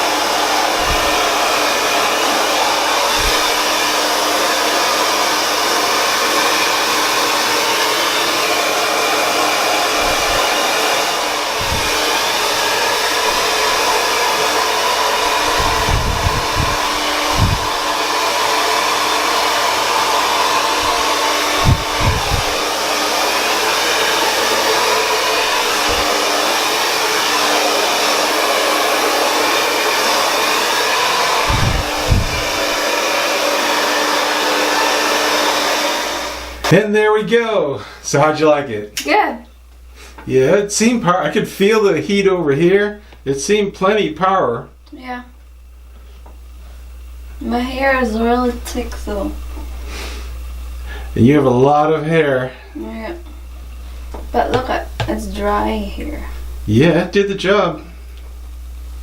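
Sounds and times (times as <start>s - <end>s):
hair dryer blowing: 0.0s - 36.8s, 46.2s - 59.0s
low thumps: 0.7s - 1.6s, 3.1s - 3.7s, 9.9s - 18.0s, 20.7s - 22.8s, 25.4s - 26.3s, 31.3s - 32.8s.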